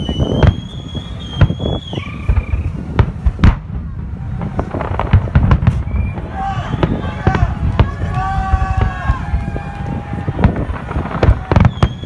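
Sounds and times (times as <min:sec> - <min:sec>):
high whistle sliding lower: 0:00.0 - 0:02.8, 0:05.7 - 0:06.9
fireworks bangs: 0:00.0 - 0:12.0.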